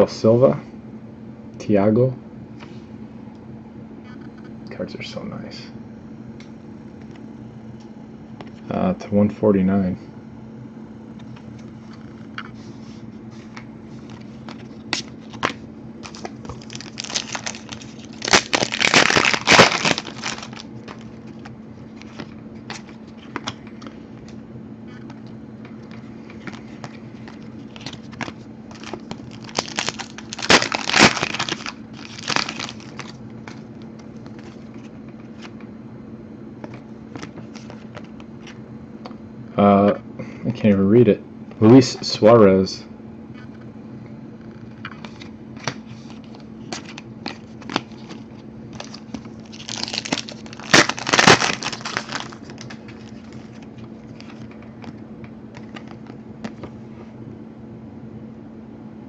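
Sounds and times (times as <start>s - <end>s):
steady low hum: 0.0s - 59.0s
card pack wrappers crinkling and tearing: 13.4s - 24.4s, 25.8s - 35.5s, 36.6s - 38.6s, 44.7s - 56.7s.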